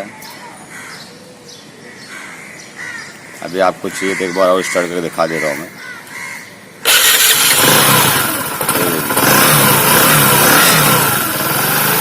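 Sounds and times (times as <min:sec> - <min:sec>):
motorcycle engine running: 0:06.8 - 0:12.0.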